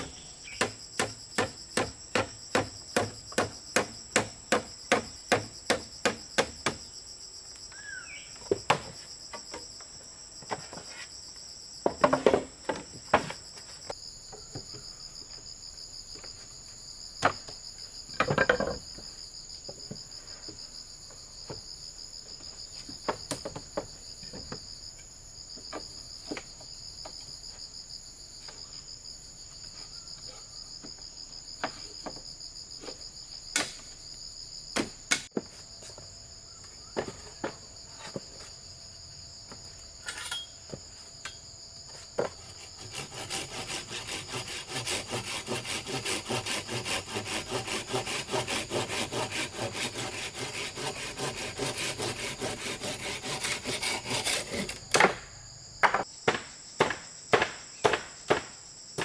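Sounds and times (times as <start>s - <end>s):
insects chorus: 0.0s - 59.0s
sharp knocks and thumps: 11.8s - 13.4s, 17.2s - 19.1s, 54.6s - 59.0s.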